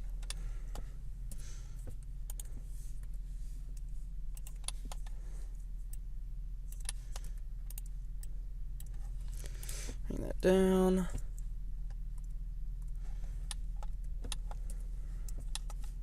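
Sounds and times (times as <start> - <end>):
low electrical hum: 0.0 - 16.0
keyboard and mouse clicks: 4.4 - 5.1.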